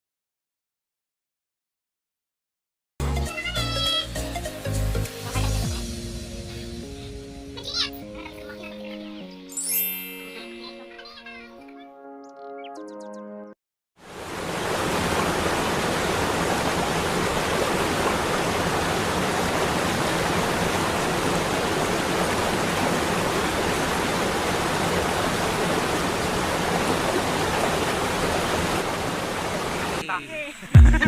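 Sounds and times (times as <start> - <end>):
rushing water: 14.0 - 30.7.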